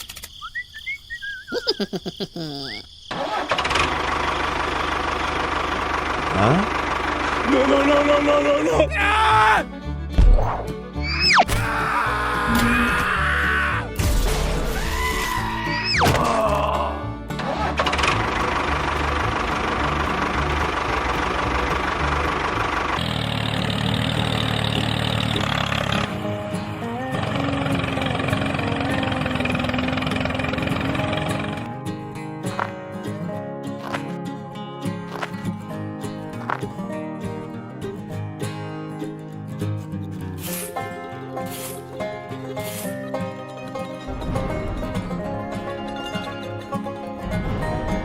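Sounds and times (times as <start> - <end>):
rising and falling chirps: 0.3 - 3.0, 11.0 - 11.5
small engine running: 3.1 - 8.6, 17.4 - 31.8.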